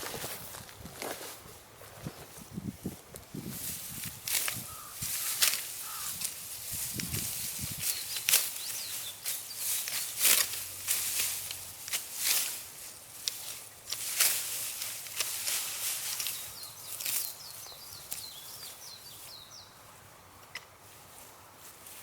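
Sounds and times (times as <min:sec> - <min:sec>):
grass being cut by hand: 0:03.4 - 0:18.4
small bird chirping: 0:07.6 - 0:10.4, 0:16.2 - 0:19.8.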